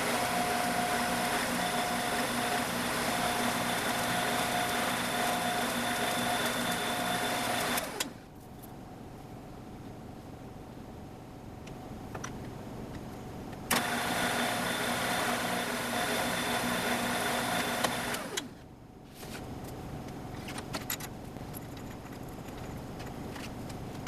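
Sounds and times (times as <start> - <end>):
router spindle motor whine: 0.0 - 8.2, 13.7 - 18.5.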